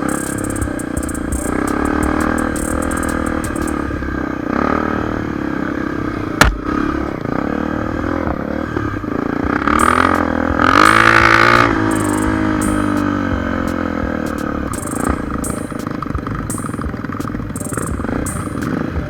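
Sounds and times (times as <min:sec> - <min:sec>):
sharp knock: 0:00.0 - 0:03.9, 0:06.4 - 0:06.8
dirt bike engine running: 0:00.0 - 0:19.0.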